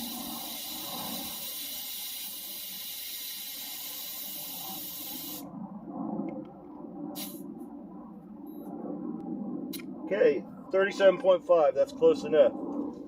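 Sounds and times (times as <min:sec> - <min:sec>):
air hissing from tire valve: 0:00.0 - 0:05.4, 0:07.2 - 0:07.4.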